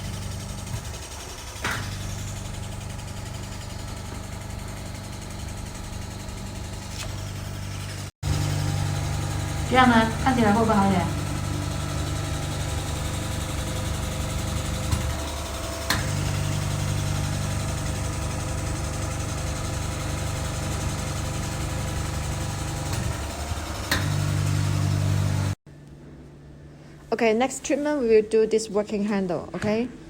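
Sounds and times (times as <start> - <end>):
vacuum suction pump humming: 0.0 - 25.6.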